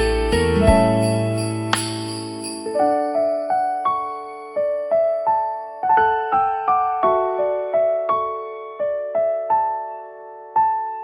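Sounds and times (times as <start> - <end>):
bell-like notes over bass line: 0.0 - 2.2
bright chime strike: 0.0 - 2.6.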